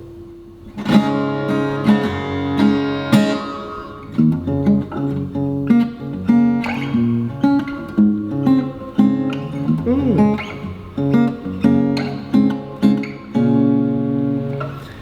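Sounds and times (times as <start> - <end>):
acoustic guitar playing: 0.7 - 15.0.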